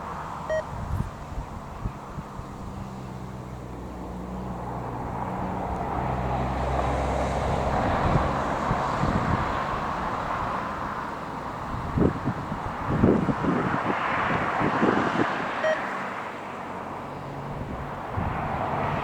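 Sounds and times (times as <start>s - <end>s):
wind buffeting microphone: 0.0s - 3.8s, 4.7s - 15.6s, 17.4s - 19.0s.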